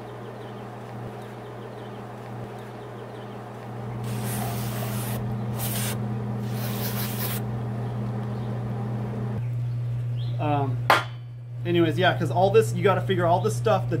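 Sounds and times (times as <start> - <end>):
low hum: 0.0 - 14.0
aerosol can spraying: 4.0 - 7.4.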